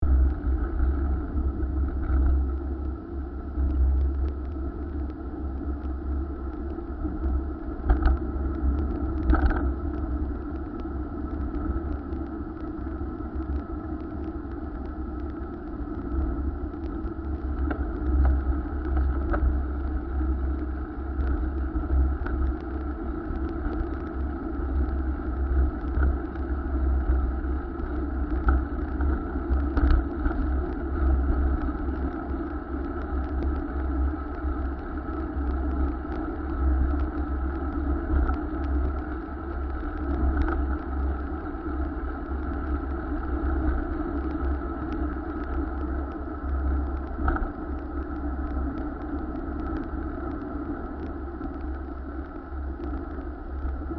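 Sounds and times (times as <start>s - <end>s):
road noise: 0.0s - 53.9s
bicycle clicks and rattles: 0.3s - 53.9s.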